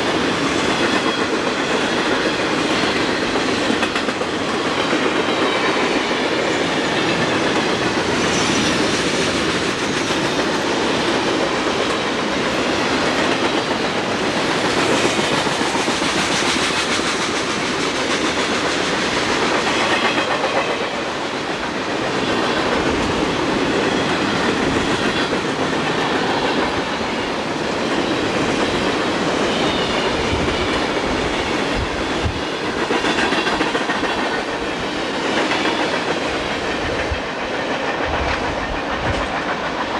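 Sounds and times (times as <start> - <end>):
clickety-clack over rail joints: 0.0 - 39.9
train wheels rumbling on rails: 0.0 - 39.9
faint high wheel squeal: 8.1 - 8.9, 29.4 - 30.4.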